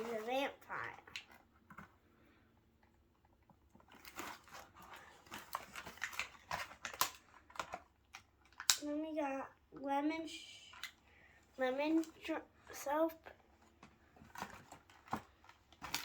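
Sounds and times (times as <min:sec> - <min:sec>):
plastic packaging crinkles and clicks: 0:00.0 - 0:02.0, 0:02.8 - 0:09.0, 0:11.8 - 0:16.0.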